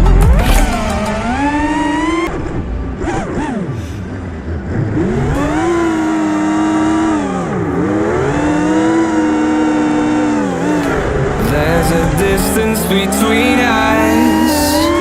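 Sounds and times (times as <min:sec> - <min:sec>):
quadcopter motors whining: 0:03.1 - 0:15.0.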